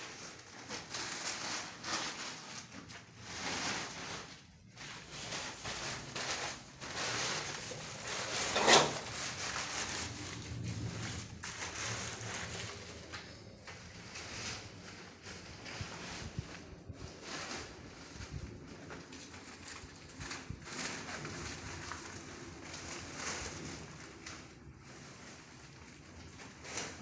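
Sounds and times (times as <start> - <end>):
tiles scraping and shuffling: 3.3 - 16.1.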